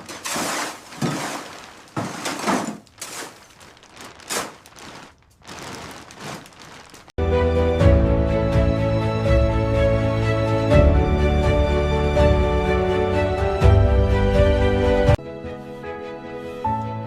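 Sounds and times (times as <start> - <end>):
crashes of things breaking: 0.0 - 7.1
music: 7.2 - 17.0.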